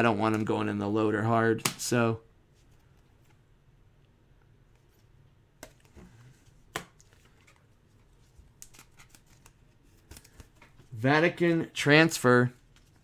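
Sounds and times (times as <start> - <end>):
trading cards rustling: 4.8 - 13.0.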